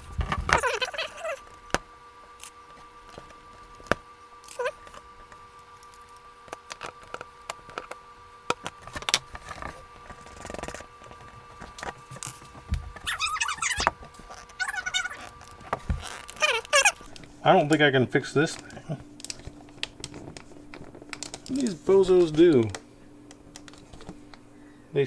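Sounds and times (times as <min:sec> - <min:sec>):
plastic parts clicking and scraping: 0:00.0 - 0:01.8, 0:02.4 - 0:17.2
short squeaky sounds: 0:04.5 - 0:04.8, 0:13.0 - 0:17.1.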